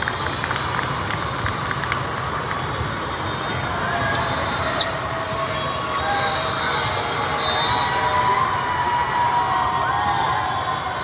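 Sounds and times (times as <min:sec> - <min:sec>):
sneakers squeaking on floor: 0:00.9 - 0:01.8, 0:02.8 - 0:08.5
murmur of voices: 0:01.0 - 0:11.0.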